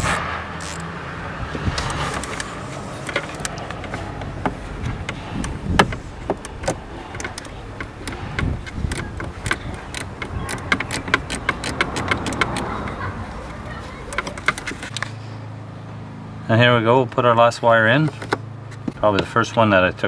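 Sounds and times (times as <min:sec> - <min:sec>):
plastic parts clicking and knocking: 0:01.6 - 0:15.1, 0:18.0 - 0:19.7.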